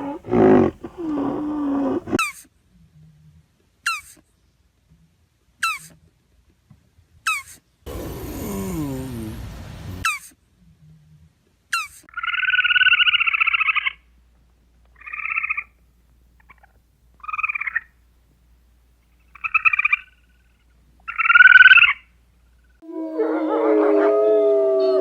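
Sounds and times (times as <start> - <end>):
animal trilled pulsing calls: 0.0 - 2.2.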